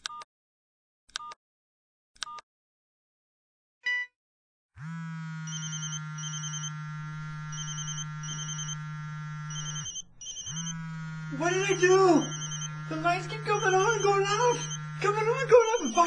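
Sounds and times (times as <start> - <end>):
phone vibrating buzz: 4.8 - 16.0
electronic ringtone blips: 5.5 - 6.7, 7.5 - 8.8, 9.5 - 10.8, 12.1 - 14.9
high trilling beeps: 7.6 - 8.8, 9.5 - 10.8, 11.5 - 16.0
low beep: 12.3 - 12.7.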